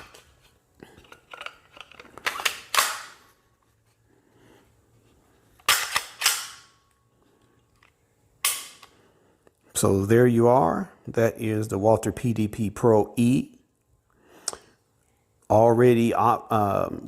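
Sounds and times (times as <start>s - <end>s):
pistol slide racking clacks: 1.2s - 3.2s, 5.6s - 6.7s
pistol handling clicks: 1.3s - 3.2s, 5.6s - 6.8s, 7.7s - 9.0s.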